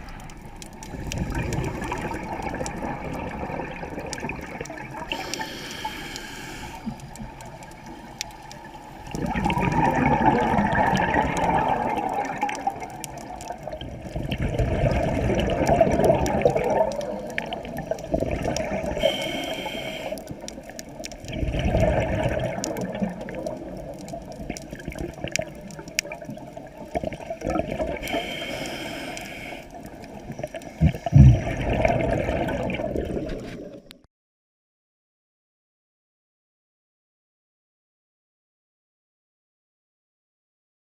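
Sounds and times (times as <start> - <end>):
underwater exhaled bubbles: 0.0 - 34.1
regulator inhale hiss: 5.1 - 7.0, 18.9 - 20.4, 28.0 - 29.8.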